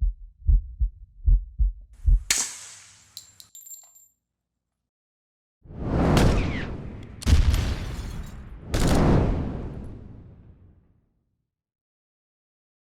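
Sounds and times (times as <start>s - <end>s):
deep heartbeat-like thumps: 0.0s - 2.3s
loud rushing blast: 5.7s - 7.9s.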